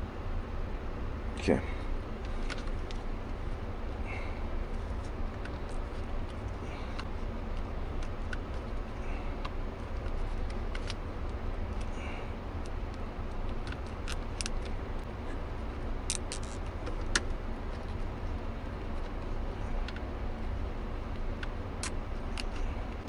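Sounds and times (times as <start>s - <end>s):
steady low rumble: 0.0s - 23.0s
plastic parts clicking and rattling: 5.0s - 11.9s, 12.6s - 15.1s, 16.0s - 18.0s.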